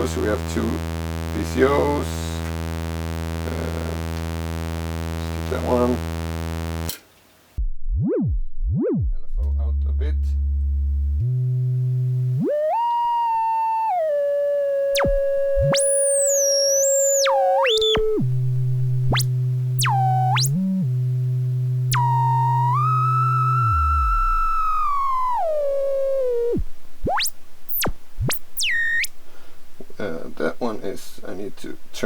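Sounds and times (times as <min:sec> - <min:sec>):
low synthesizer drone: 0:10.3 - 0:29.2
high synthesizer tone gliding: 0:12.4 - 0:29.1.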